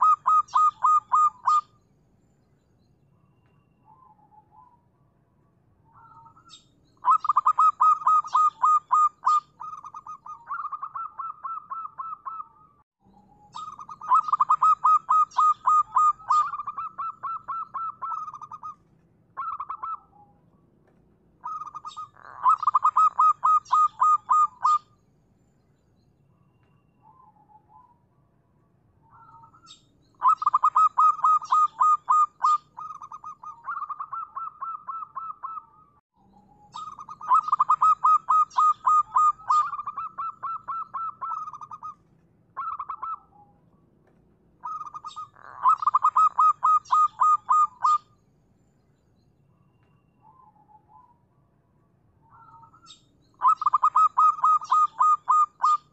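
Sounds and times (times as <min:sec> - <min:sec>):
dove cooing in staccato phrases: 0:00.0 - 0:01.7, 0:07.0 - 0:12.7, 0:13.6 - 0:18.8, 0:19.4 - 0:20.2, 0:21.4 - 0:24.9, 0:30.2 - 0:35.8, 0:36.8 - 0:42.0, 0:42.6 - 0:43.3, 0:44.6 - 0:48.1, 0:53.4 - 0:55.9.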